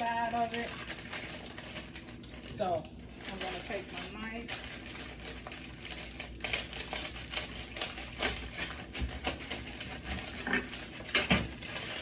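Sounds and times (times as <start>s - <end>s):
paper crinkling: 0.0s - 12.0s.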